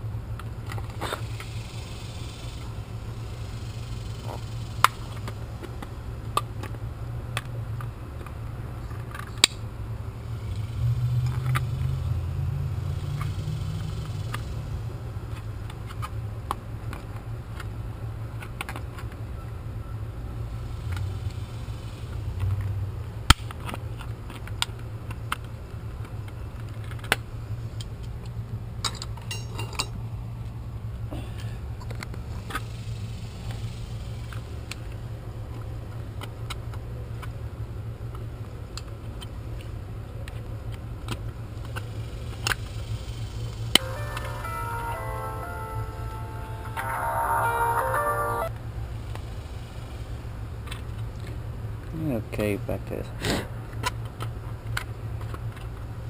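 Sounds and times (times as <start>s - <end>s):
metal tools clinking: 29.2s - 30.0s.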